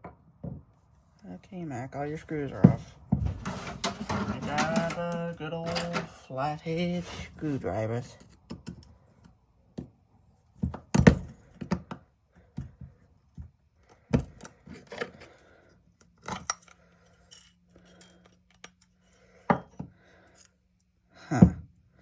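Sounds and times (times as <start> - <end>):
screwdriver clicking and scraping metal: 3.4 - 6.2.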